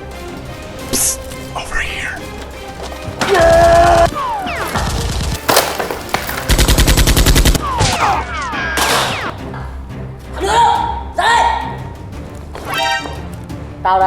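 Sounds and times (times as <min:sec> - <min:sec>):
machine gun burst: 0:04.8 - 0:07.6.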